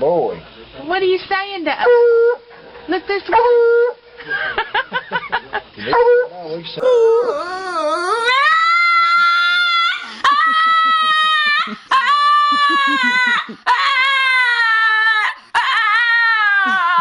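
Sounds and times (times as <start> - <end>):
dog howling whines: 5.9 - 17.0.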